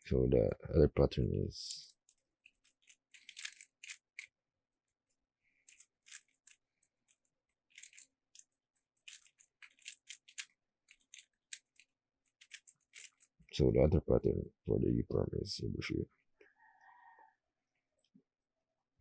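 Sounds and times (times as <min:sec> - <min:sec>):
rubik's cube layers clicking: 0:02.0 - 0:04.3, 0:05.6 - 0:13.3.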